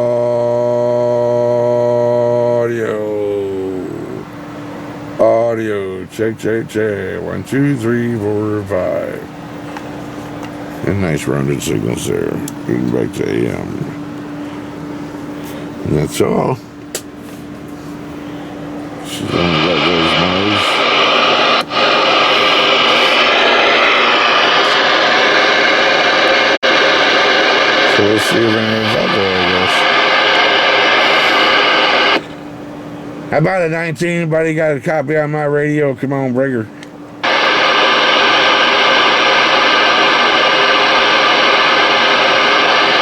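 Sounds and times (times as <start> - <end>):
radio static hiss: 5.7 - 9.3, 10.8 - 14.0, 19.0 - 32.4, 37.2 - 43.0.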